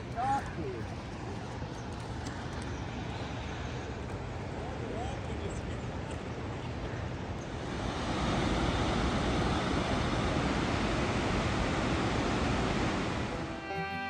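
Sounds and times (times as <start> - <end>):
water rushing over falls: 7.6 - 13.7.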